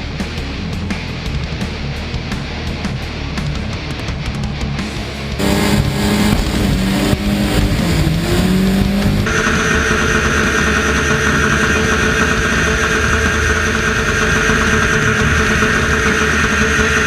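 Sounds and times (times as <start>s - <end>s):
car engines droning: 4.8s - 17.0s.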